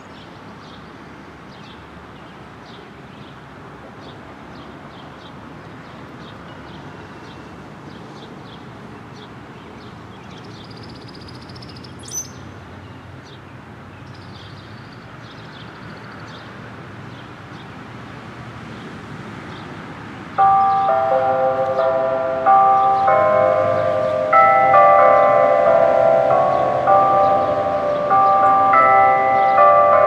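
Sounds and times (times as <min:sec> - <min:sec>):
road traffic hum: 0:00.0 - 0:30.0
small birds chirping: 0:10.2 - 0:12.6
bell tower bells chiming: 0:20.4 - 0:30.0.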